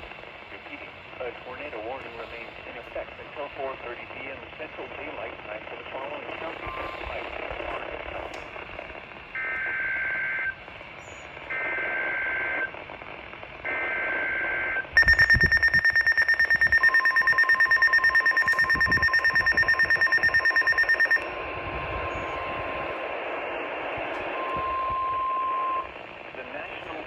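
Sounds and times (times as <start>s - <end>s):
fast-pulsing electronic alarm beep: 15.0s - 21.4s
two-tone data bursts: 15.0s - 21.4s.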